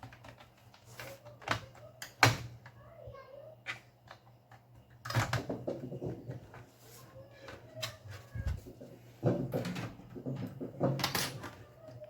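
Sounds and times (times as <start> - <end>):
laptop plastic clicks and rattles: 0.0 - 2.8.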